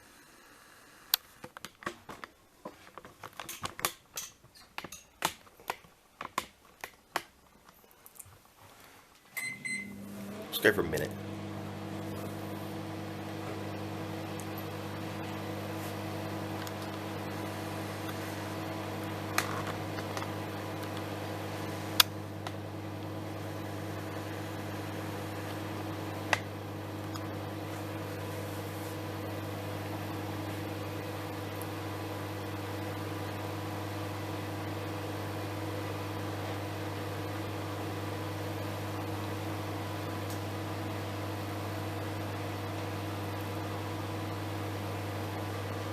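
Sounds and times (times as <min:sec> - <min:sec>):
microwave oven humming: 0:09.3 - 0:45.9.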